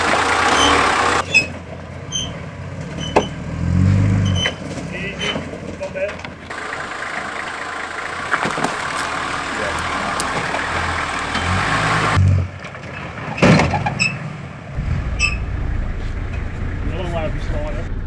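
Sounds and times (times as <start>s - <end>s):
off-road vehicle engine revving: 0.0s - 1.5s, 2.4s - 5.9s, 6.5s - 13.3s, 14.0s - 18.0s
vehicle knocking on rock: 6.5s - 11.8s.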